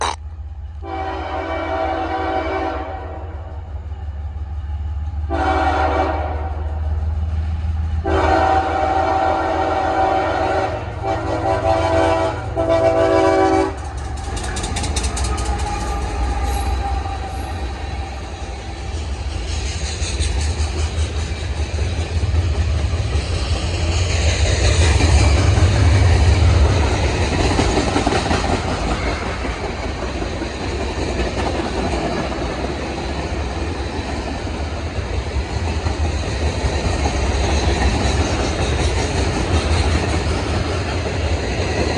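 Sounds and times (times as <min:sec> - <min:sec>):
freight train rumbling past: 0:00.0 - 0:41.9
train horn blasts: 0:00.8 - 0:03.5, 0:05.3 - 0:06.8, 0:08.0 - 0:13.8.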